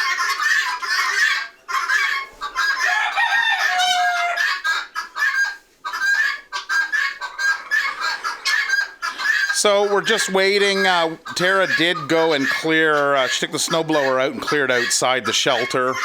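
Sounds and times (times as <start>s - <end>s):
poultry clucking and calling: 0.0s - 16.0s
rooster crowing: 2.8s - 4.6s.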